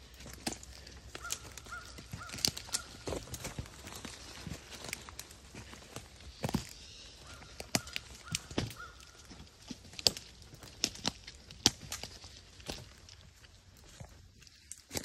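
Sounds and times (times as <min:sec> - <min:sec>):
footsteps crunching dry leaves: 0:00.0 - 0:15.0
twigs snapping: 0:00.0 - 0:15.0.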